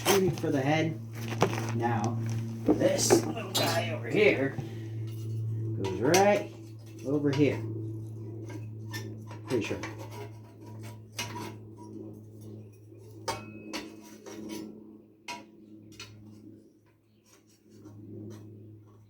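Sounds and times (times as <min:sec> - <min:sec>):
steady low hum: 0:00.0 - 0:19.0
metal engine parts clinking: 0:02.7 - 0:04.2.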